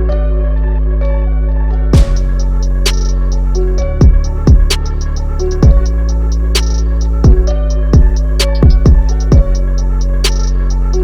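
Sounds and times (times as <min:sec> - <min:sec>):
deep bass: 0:00.0 - 0:11.0
snare-like hit: 0:02.0 - 0:09.6, 0:10.2 - 0:11.0
kick drums: 0:02.0 - 0:10.4
hi-hat pattern: 0:02.0 - 0:11.0.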